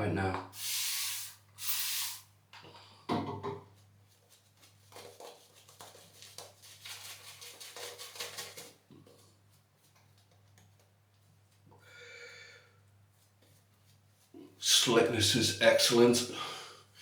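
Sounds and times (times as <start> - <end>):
spray bottle spritz: 0.6 - 2.2.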